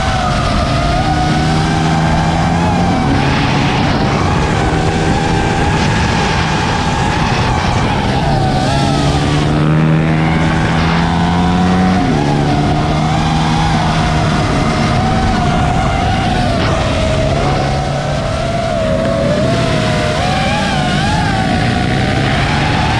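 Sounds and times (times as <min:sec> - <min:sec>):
motorbike engines revving: 0:00.0 - 0:22.9.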